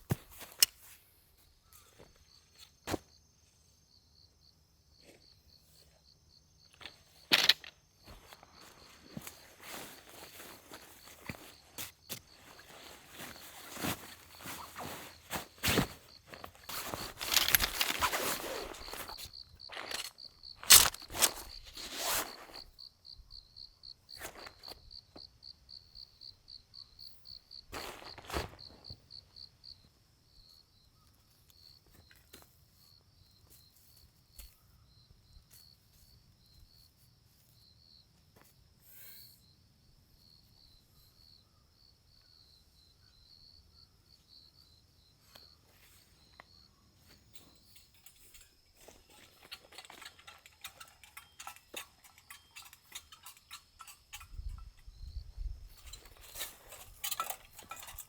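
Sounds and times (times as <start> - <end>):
insects chirping: 0.0 - 58.0
footsteps: 6.8 - 22.6
rustling: 8.1 - 22.7
knocks of things handled: 9.2 - 22.3.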